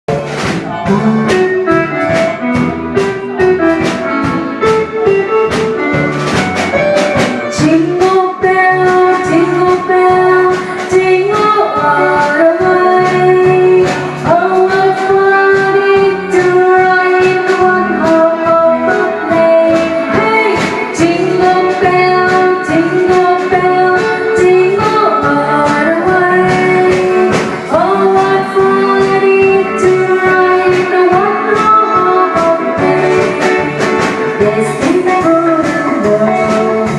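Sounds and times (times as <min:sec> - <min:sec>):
percussion hits: 0:00.1 - 0:18.6
live band music: 0:00.1 - 0:36.9.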